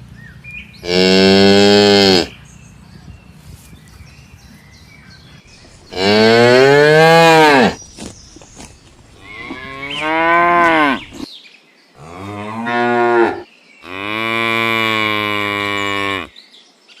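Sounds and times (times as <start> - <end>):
cattle mooing: 0.8 - 2.3, 9.2 - 11.2, 12.0 - 16.3.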